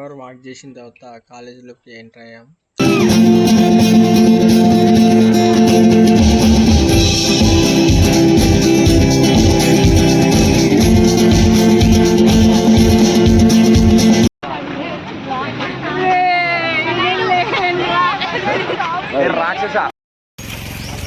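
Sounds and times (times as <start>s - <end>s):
loud guitar music: 2.8s - 14.3s
steady beat: 2.8s - 14.3s.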